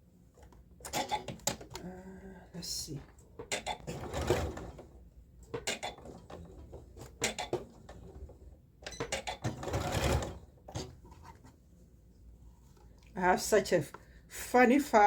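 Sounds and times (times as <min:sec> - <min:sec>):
sewing machine stitching: 0:03.4 - 0:04.9, 0:05.6 - 0:10.9.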